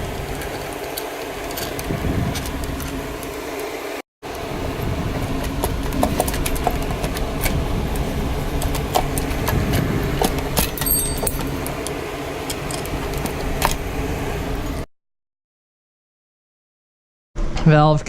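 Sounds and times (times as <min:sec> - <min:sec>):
low rumble: 0:04.2 - 0:14.9
metallic clinks of tools: 0:10.7 - 0:11.5.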